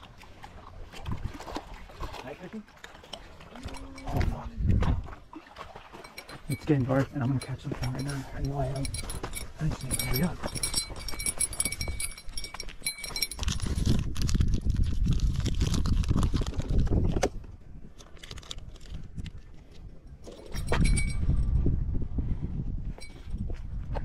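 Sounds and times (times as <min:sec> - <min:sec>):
light metallic clinks and jingles: 0:03.6 - 0:04.4, 0:06.0 - 0:14.3, 0:19.9 - 0:21.5, 0:23.0 - 0:23.5.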